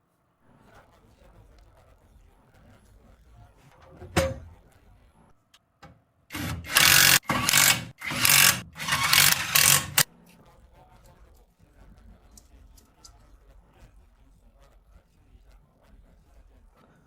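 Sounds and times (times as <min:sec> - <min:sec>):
tool rasping against a part: 0:06.3 - 0:10.0.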